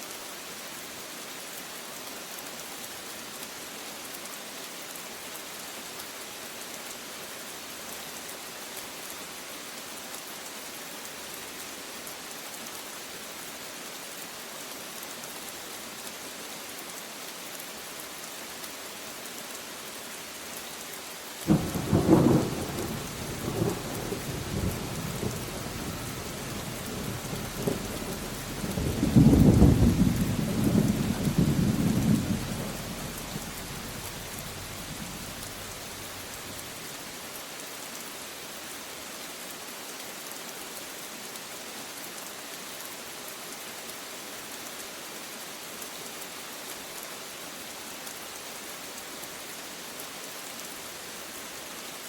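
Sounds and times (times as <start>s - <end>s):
steady rain falling: 0.0s - 52.0s
thunder rumbling: 21.5s - 36.5s.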